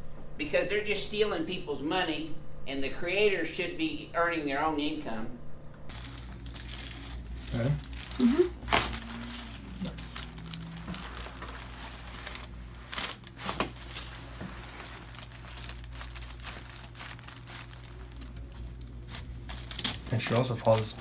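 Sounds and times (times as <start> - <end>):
steady low hum: 0.0 - 21.0
paper crinkling and rustling: 5.9 - 21.0.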